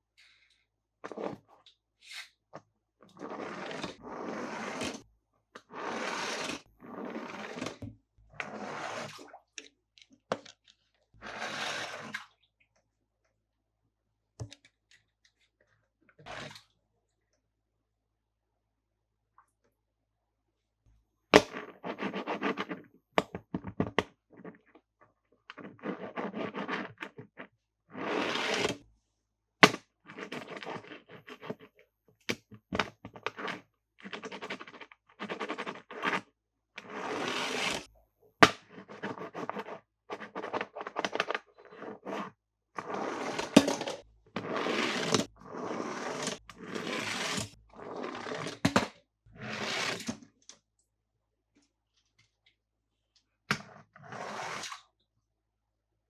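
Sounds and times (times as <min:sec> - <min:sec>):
toy cars rolling over plastic: 0:42.8 - 0:48.7.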